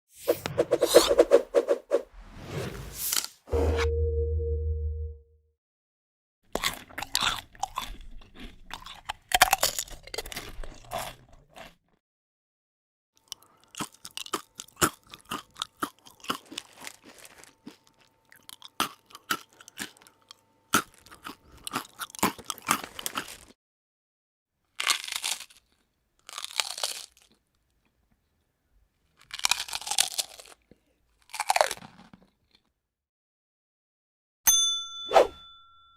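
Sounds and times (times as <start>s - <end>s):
potato chips crunching: 6.5s - 11.8s, 13.3s - 23.6s, 24.7s - 27.5s, 29.1s - 32.7s.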